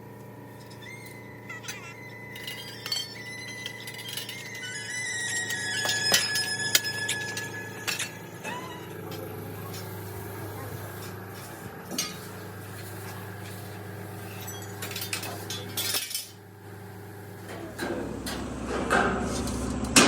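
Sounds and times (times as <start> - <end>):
low machine hum: 0.0 - 20.0
metal parts clinking: 0.6 - 8.4, 14.2 - 16.4.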